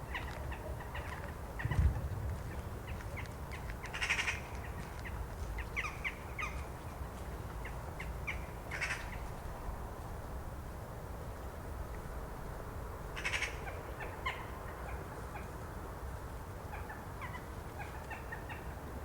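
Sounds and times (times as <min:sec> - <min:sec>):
low rumble: 0:01.6 - 0:03.4.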